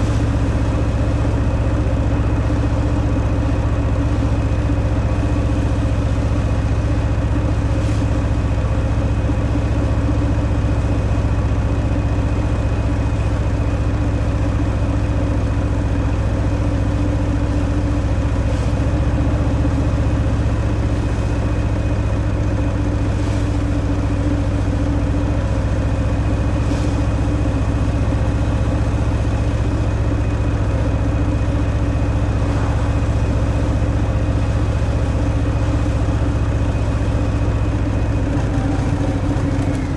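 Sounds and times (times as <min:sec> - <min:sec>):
motorcycle engine cruising: 0:38.2 - 0:39.9.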